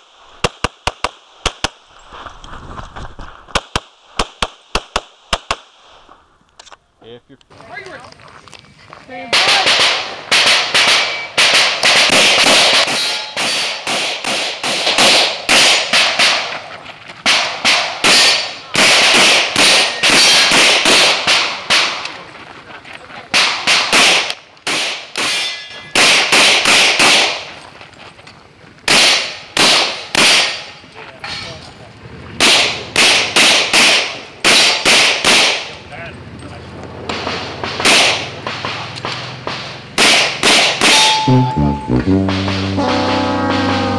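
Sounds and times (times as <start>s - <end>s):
pistol shots fired rapidly: 9.3s - 16.5s, 17.3s - 22.0s, 28.9s - 30.6s, 32.4s - 35.7s, 37.1s - 38.8s, 39.5s - 41.1s.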